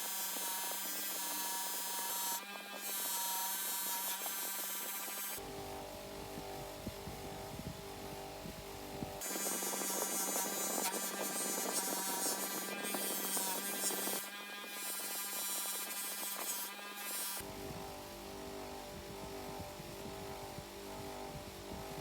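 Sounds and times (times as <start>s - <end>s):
tool grinding on metal: 0.0s - 5.4s, 9.2s - 17.5s
electric polishing tool humming: 0.0s - 22.0s.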